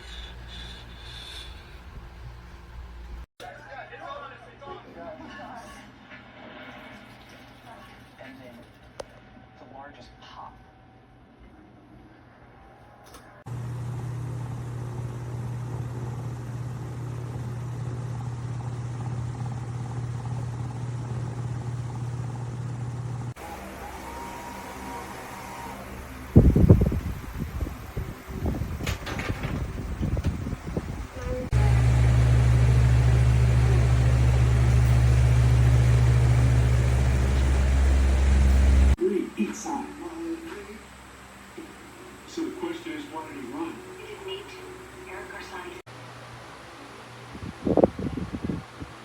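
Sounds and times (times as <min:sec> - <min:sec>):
electric fan running: 0:00.0 - 0:03.3, 0:13.5 - 0:39.0, 0:39.6 - 0:49.0.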